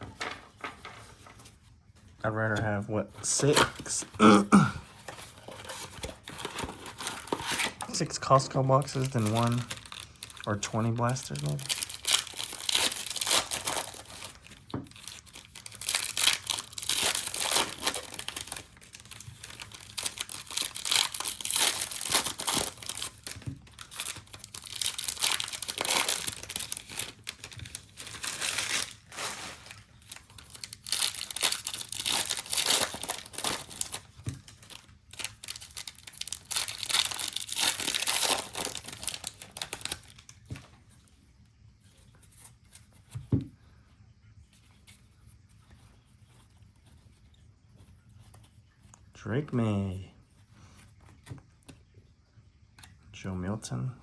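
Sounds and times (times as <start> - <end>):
foil wrappers crinkling and tearing: 3.2 - 40.9.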